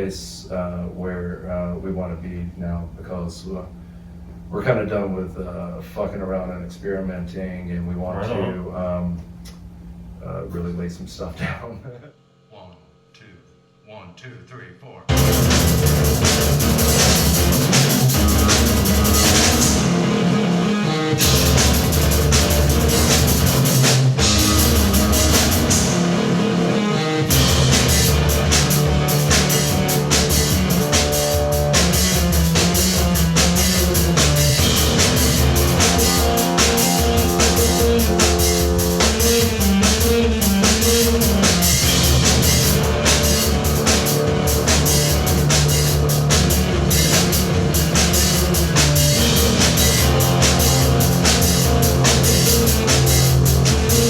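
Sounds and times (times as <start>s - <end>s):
low bass line: 7.9s - 9.4s, 15.1s - 54.0s
drum kit: 15.1s - 54.0s
electric guitar: 15.1s - 54.0s.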